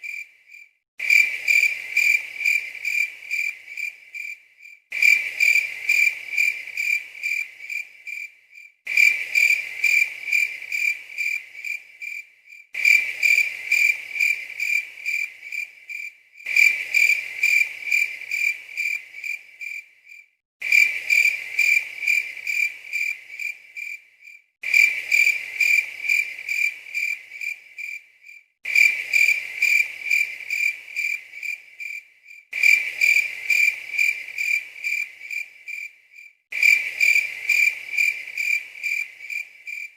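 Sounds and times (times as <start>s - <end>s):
cricket chirping: 0.0s - 39.9s.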